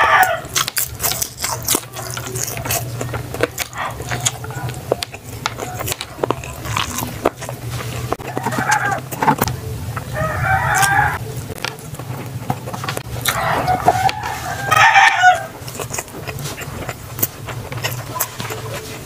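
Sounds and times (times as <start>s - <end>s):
rooster crowing: 0.0s - 0.5s, 8.4s - 9.1s, 10.1s - 11.2s, 13.2s - 15.6s
steady low hum: 0.0s - 19.0s
clicks of eating: 0.2s - 10.1s, 10.7s - 19.0s.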